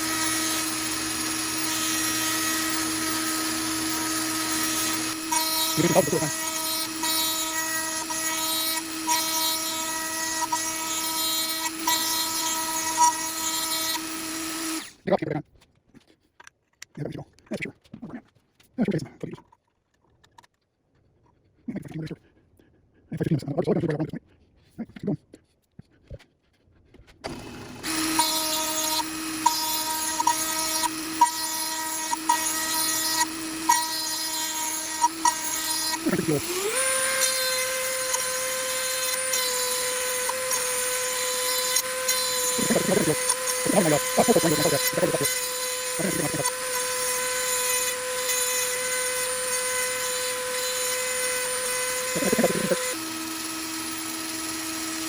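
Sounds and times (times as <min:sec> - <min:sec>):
rotary tool grinding steel: 0:00.0 - 0:15.1, 0:27.2 - 0:55.0.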